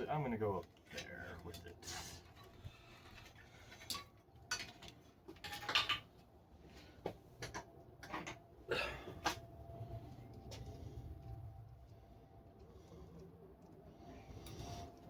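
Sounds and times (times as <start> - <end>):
tools and parts clinking: 0.3 - 6.4, 7.4 - 9.6.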